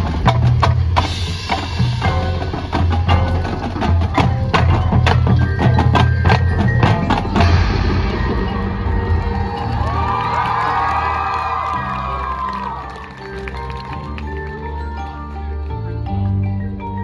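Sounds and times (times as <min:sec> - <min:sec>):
sharp percussion hits: 0:00.0 - 0:12.0
marching band playing: 0:00.0 - 0:15.1
steady low bass: 0:06.6 - 0:11.6.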